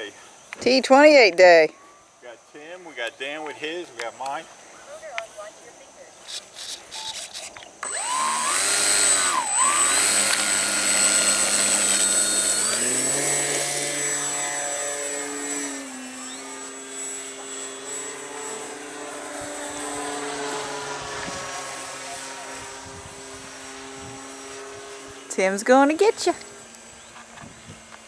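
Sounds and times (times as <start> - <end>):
model airplane motor whining: 6.3 - 28.0.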